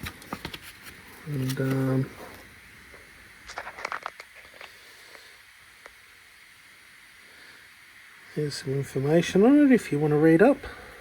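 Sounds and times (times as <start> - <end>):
faint steady hiss: 0.0 - 11.0.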